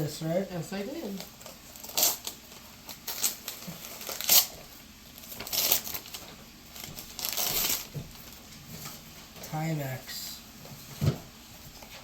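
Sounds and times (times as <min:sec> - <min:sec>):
wrapping paper tearing and crumpling: 0:01.0 - 0:08.5.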